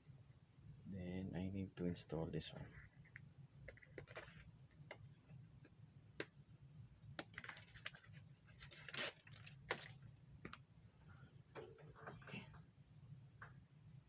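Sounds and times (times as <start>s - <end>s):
hands rustling and scraping parts: 7.1s - 10.6s.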